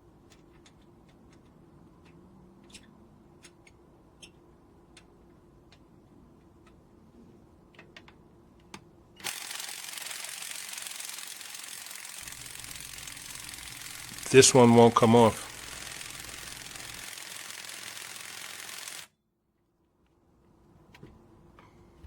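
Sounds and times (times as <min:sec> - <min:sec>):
impact wrench hammering: 0:09.3 - 0:19.1.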